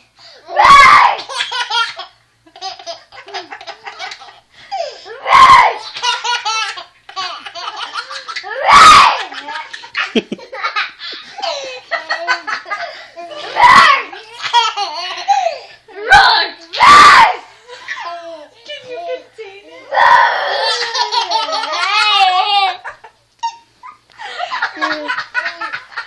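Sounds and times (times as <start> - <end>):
baby laughing: 1.2 - 4.9, 5.8 - 15.6, 20.5 - 24.0, 24.6 - 26.0.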